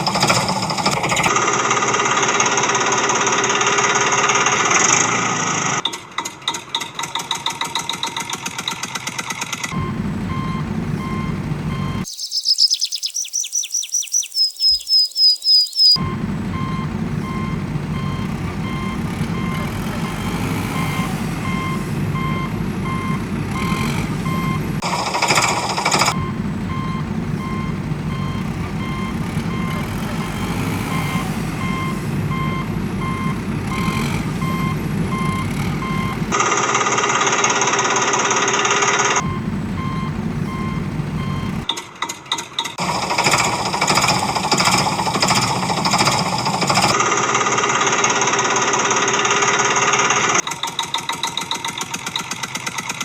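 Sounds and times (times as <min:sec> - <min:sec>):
heavy vehicle engine rumble: 0:00.0 - 0:12.1, 0:16.0 - 0:36.7, 0:38.4 - 0:53.0
reversing alarm beeping: 0:09.7 - 0:36.4, 0:39.2 - 0:41.7.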